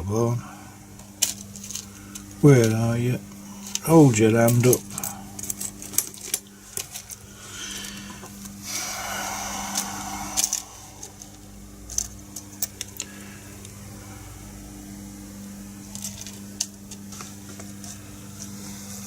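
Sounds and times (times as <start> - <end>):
steady low hum: 0.0 - 19.0
resistors clicking and rattling: 1.0 - 8.6.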